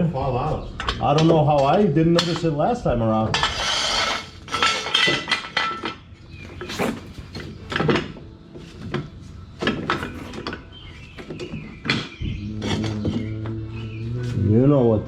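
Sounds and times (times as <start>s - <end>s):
metal tools clinking: 3.3s - 8.2s.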